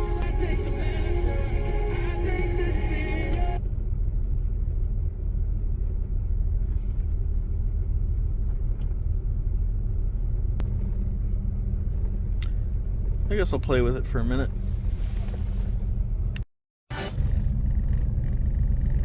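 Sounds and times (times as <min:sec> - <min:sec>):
car radio music: 0:00.0 - 0:03.6
idling car rumble: 0:00.0 - 0:19.0.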